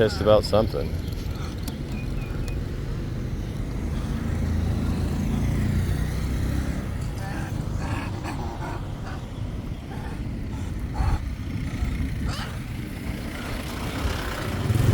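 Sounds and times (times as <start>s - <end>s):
road vehicle passing: 0.0s - 14.9s.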